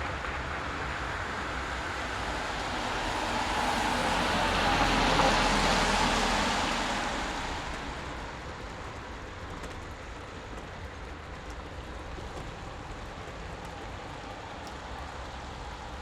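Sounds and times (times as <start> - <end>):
vehicle passing: 2.7 - 8.4.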